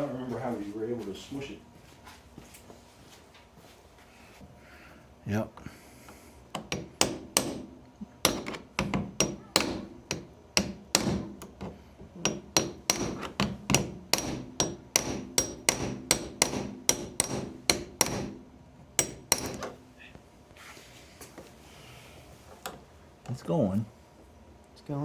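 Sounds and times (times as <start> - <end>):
hammer tapping glass: 8.2 - 11.3, 12.2 - 18.3.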